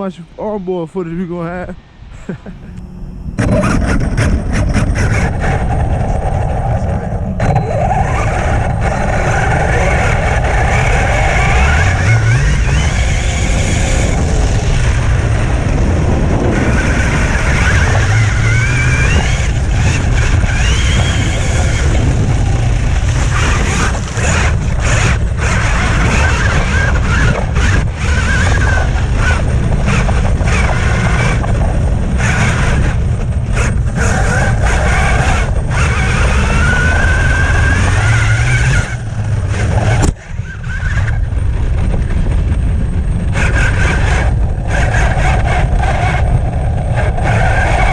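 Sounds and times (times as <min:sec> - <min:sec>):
heavy low rumble: 0:00.0 - 0:47.9
electric motor whining: 0:02.2 - 0:42.5.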